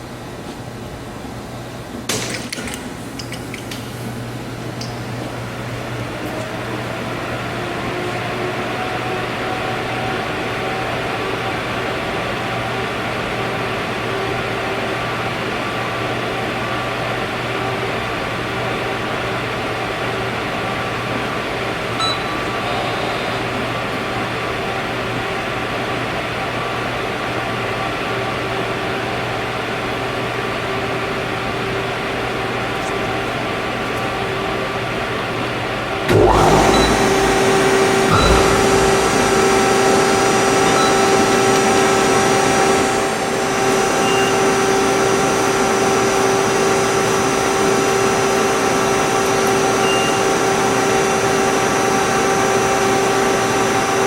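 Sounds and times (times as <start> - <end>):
faint short beep: 36.1 - 39.9.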